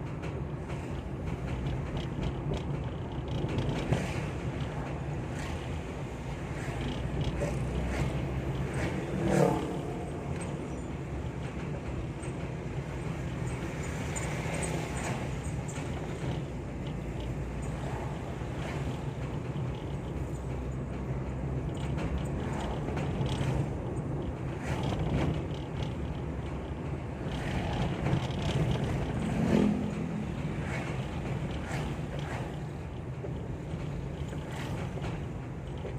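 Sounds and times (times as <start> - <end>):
engine and road drone: 0.0 - 35.9
knocks and rattles: 10.2 - 35.9.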